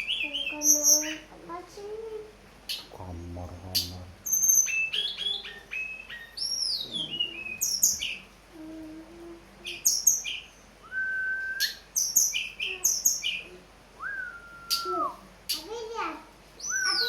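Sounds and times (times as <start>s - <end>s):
flycatcher singing: 0.0s - 1.3s, 2.7s - 8.7s, 9.6s - 15.7s, 16.6s - 17.0s.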